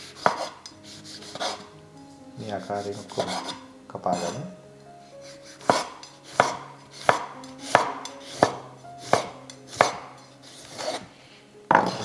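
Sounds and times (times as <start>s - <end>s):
knife slicing on chopping board: 0.2s - 1.6s, 5.6s - 11.1s.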